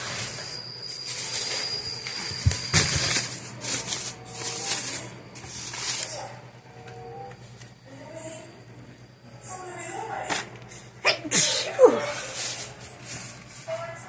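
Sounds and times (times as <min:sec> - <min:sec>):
plastic bags crinkling: 0:00.2 - 0:06.4, 0:12.0 - 0:14.0.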